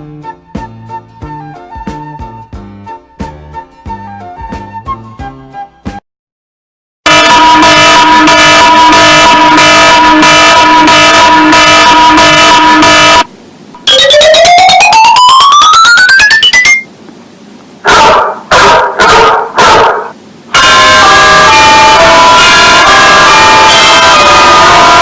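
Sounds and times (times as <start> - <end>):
pulsing electronic alarm tone: 13.8 - 16.9, 20.6 - 25.0
rising electronic notes: 13.8 - 16.9
recorded dog barks: 17.8 - 20.2.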